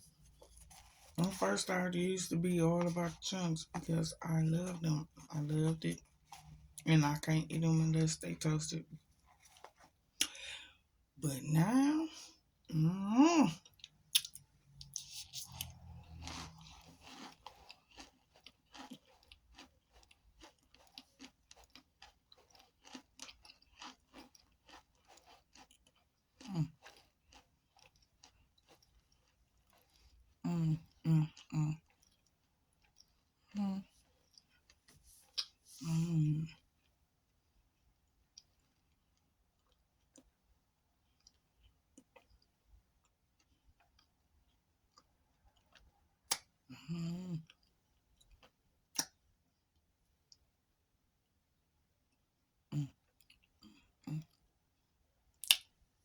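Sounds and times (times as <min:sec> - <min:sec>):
chewing crunches: 0:09.2 - 0:10.7, 0:13.6 - 0:35.9, 0:55.4 - 0:55.8.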